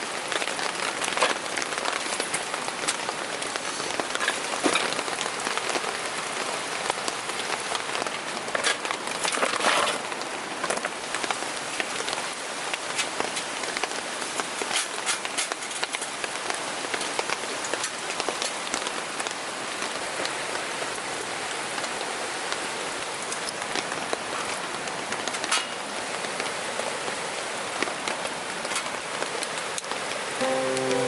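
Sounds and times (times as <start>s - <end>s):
heavy rain hissing: 0.0s - 8.5s, 30.2s - 31.0s.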